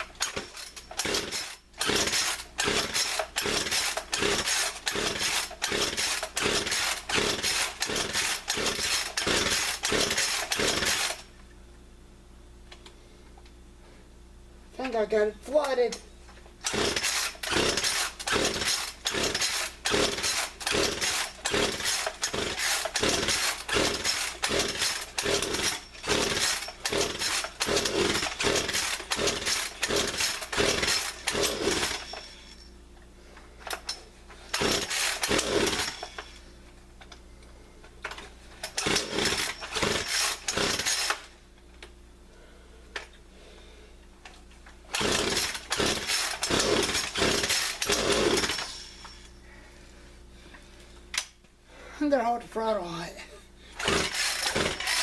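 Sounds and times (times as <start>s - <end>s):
chainsaw recoil starter yanks: 0.0s - 11.2s, 16.6s - 32.6s, 33.6s - 36.4s, 38.0s - 41.9s, 44.2s - 49.2s, 53.8s - 55.0s
chainsaw engine cranking: 0.0s - 11.3s, 16.6s - 32.7s, 33.6s - 37.2s, 38.0s - 41.4s, 44.9s - 49.3s, 53.8s - 55.0s.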